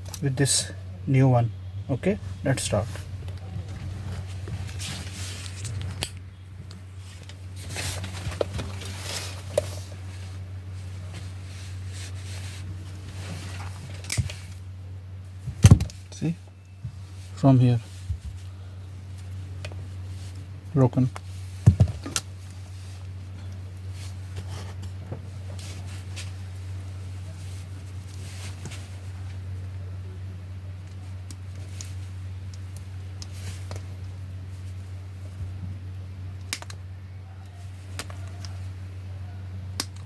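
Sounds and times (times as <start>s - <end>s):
steady low hum: 0.0s - 40.0s
soft rustling: 2.2s - 6.0s, 6.7s - 14.6s, 16.0s - 20.5s, 22.3s - 29.7s.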